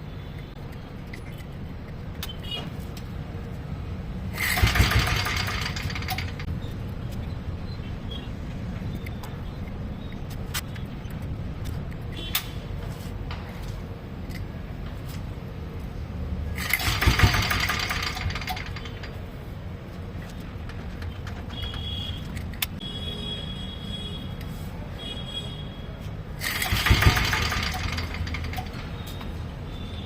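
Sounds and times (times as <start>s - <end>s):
single-cylinder diesel engine running: 4.4s - 6.5s, 16.6s - 19.2s, 26.4s - 28.7s.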